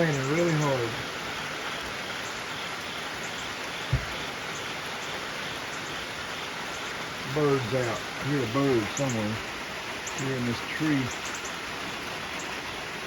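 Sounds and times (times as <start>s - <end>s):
steady rain falling: 0.0s - 13.0s
dull low thump: 3.9s - 4.3s.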